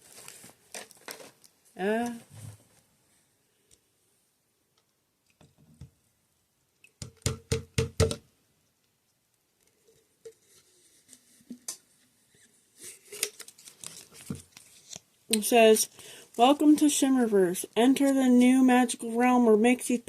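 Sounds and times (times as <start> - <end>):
packaging rustling and clicking: 0.0 - 1.5, 13.0 - 15.1.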